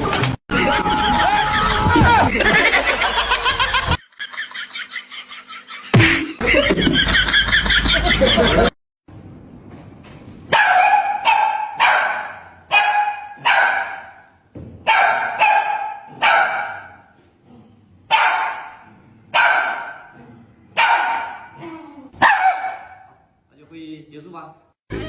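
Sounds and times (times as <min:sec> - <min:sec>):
dog barking: 0:10.5 - 0:17.1, 0:18.1 - 0:20.2, 0:20.8 - 0:21.6, 0:22.2 - 0:23.2.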